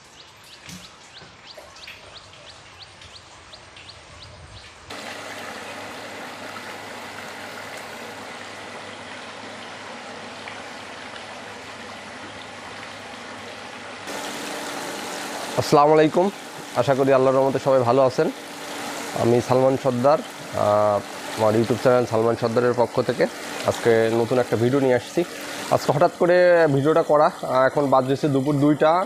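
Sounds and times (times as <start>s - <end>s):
birds chirping: 0.0s - 4.9s
water rushing into tank: 4.9s - 29.0s.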